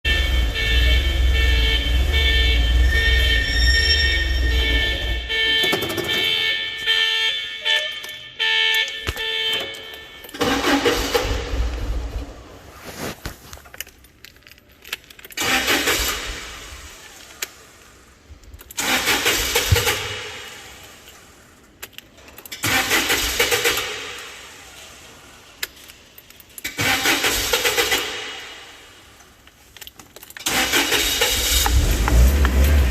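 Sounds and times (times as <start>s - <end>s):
high warning tone: 0.1s - 10.7s
engine starter cranking: 10.2s - 12.3s, 15.2s - 29.2s, 30.2s - 32.9s.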